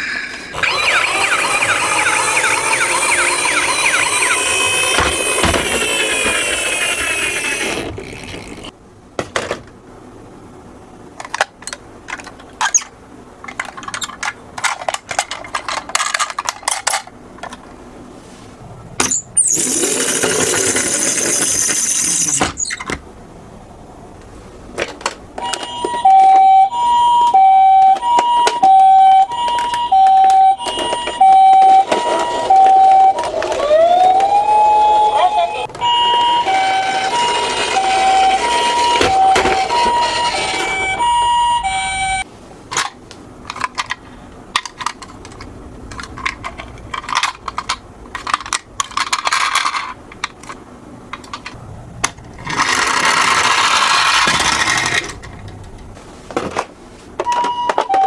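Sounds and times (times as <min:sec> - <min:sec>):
toy cars clicking and knocking: 0:00.5 - 0:08.7, 0:13.4 - 0:17.6, 0:19.4 - 0:22.7, 0:36.4 - 0:41.0, 0:42.8 - 0:55.7
toy siren wailing: 0:00.5 - 0:08.7, 0:25.4 - 0:42.2
two-tone siren: 0:00.6 - 0:07.9, 0:25.4 - 0:42.2.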